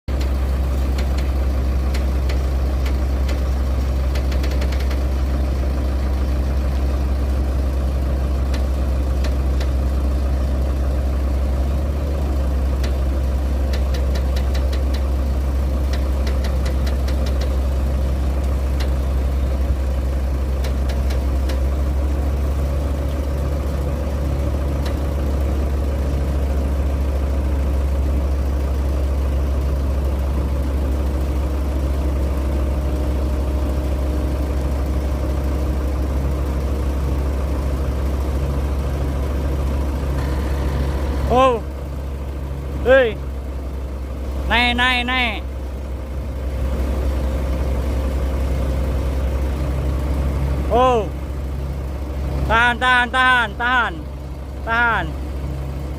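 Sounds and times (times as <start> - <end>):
sharp clicks and clanks: 0.1 - 5.2, 8.5 - 9.8, 13.7 - 15.1, 15.9 - 17.7, 20.6 - 21.7
excavator diesel engine droning: 0.1 - 55.9.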